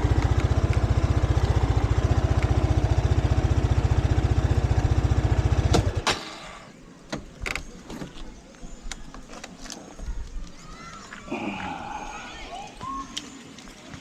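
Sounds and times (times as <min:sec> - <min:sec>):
motorcycle engine idling: 0:00.0 - 0:06.6.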